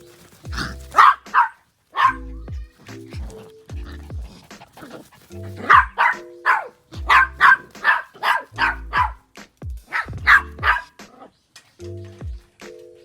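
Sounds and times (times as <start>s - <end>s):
background music: 0.0s - 13.0s
small dog barking: 0.5s - 2.3s, 4.8s - 9.2s, 9.9s - 11.3s.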